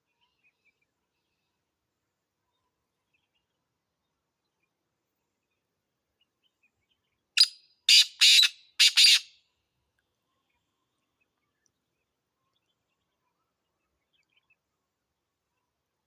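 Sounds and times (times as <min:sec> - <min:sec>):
bird calling harsh notes: 0:07.4 - 0:09.3.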